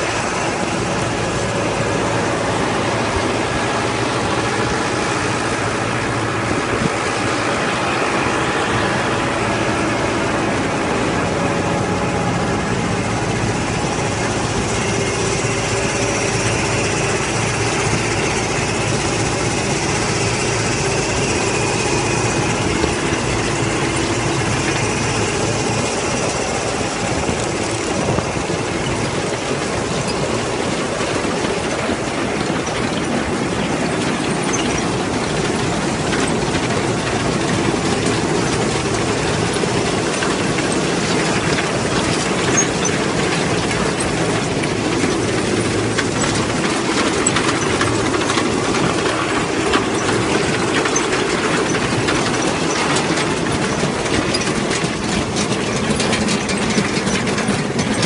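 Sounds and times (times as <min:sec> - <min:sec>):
tractor engine running: 0:00.0 - 0:58.0
chain conveyors clattering: 0:13.3 - 0:58.0.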